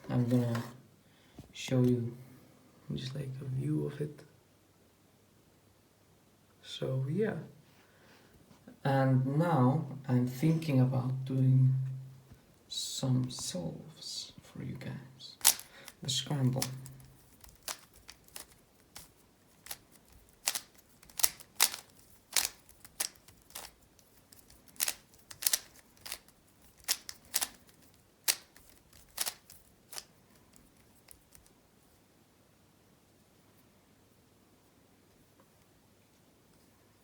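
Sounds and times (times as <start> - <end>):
speed cube layers clacking: 15.4 - 31.5.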